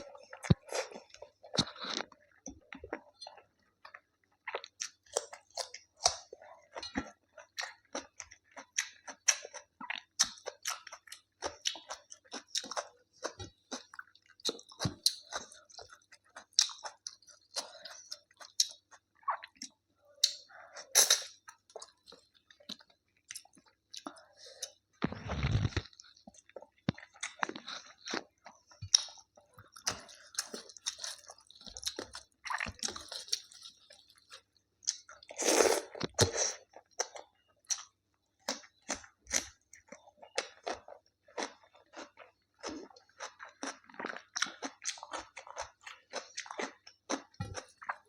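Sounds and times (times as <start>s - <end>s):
person chewing: 0.0s - 48.0s.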